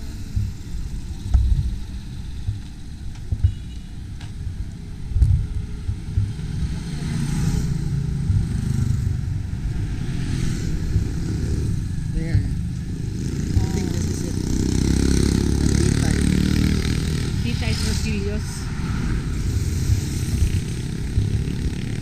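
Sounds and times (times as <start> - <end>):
wind rumbling on microphone: 0.0 - 22.0
vehicle engine running: 5.2 - 18.6, 19.2 - 22.0.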